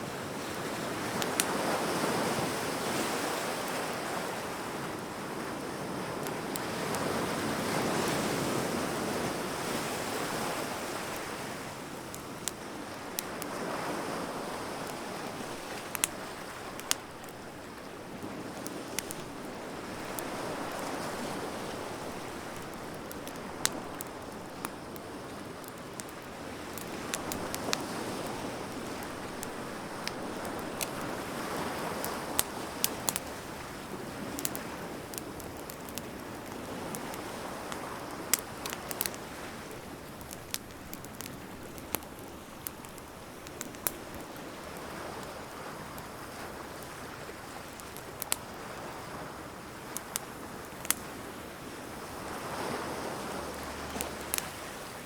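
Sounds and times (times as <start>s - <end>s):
wood fire crackling and popping: 0.1s - 52.5s, 53.1s - 55.0s
surf washing: 43.9s - 55.0s.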